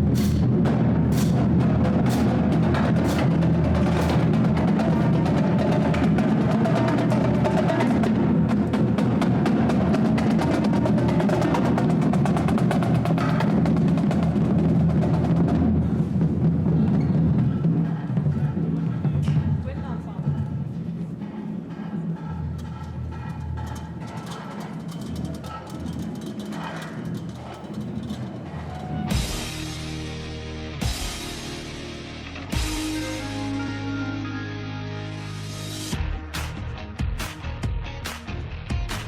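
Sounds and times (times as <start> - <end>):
rapid drum strokes: 0.0 - 33.7
low sustained notes: 29.1 - 35.9.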